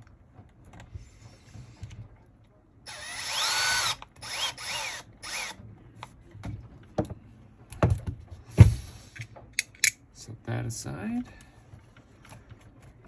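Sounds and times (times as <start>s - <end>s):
electric screwdriver whine: 2.9s - 5.6s.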